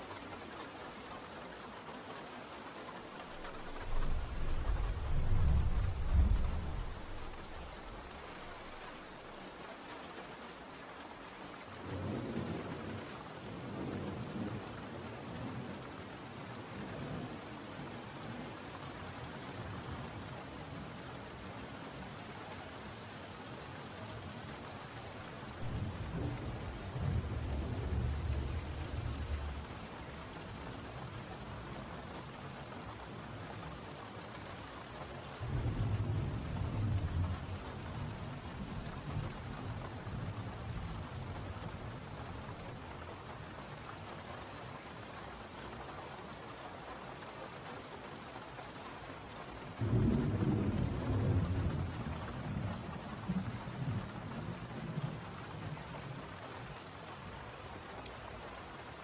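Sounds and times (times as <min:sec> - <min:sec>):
steady rain: 0:00.0 - 0:59.0
deep thunder rolls: 0:03.4 - 0:08.8, 0:25.5 - 0:30.6.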